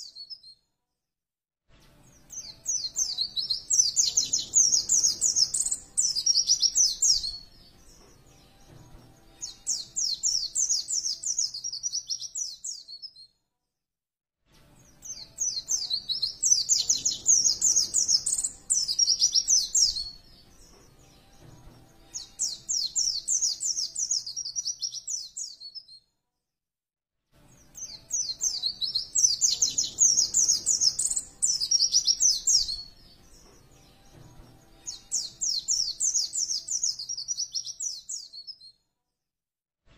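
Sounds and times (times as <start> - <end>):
bird twittering chirps: 2.3 - 7.4, 15.1 - 20.2, 27.8 - 33.0.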